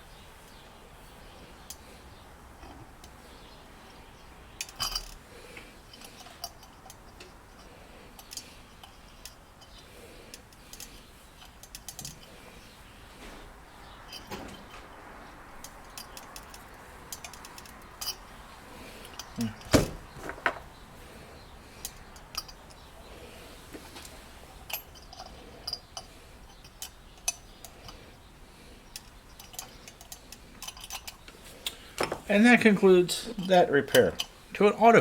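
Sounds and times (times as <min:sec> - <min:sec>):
metal parts clinking: 0:04.6 - 0:05.2, 0:05.9 - 0:12.3, 0:14.0 - 0:14.9, 0:15.6 - 0:18.3, 0:19.0 - 0:20.7, 0:21.8 - 0:22.8, 0:24.6 - 0:28.0, 0:28.9 - 0:31.3.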